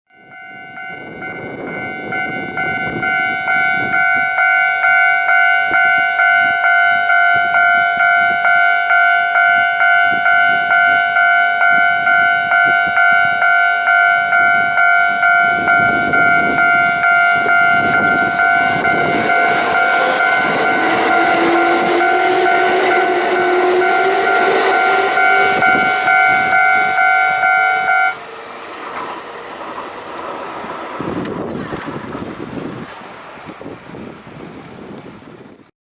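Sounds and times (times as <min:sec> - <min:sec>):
level-crossing warning bell ringing: 0:00.1 - 0:28.3
train motor whine: 0:00.1 - 0:33.9
train passing: 0:00.1 - 0:35.5.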